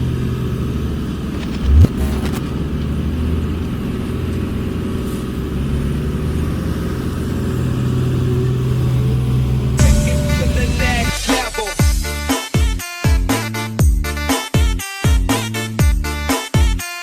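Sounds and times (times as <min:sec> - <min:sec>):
heavy machine engine running: 0:00.0 - 0:12.0.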